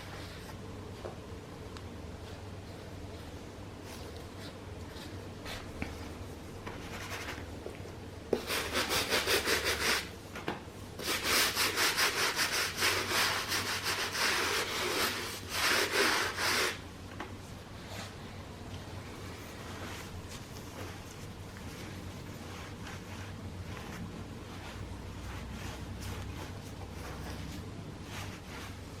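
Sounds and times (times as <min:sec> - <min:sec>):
rubbing strokes on a sneaker: 0:08.4 - 0:10.1, 0:11.0 - 0:16.8, 0:19.7 - 0:29.0.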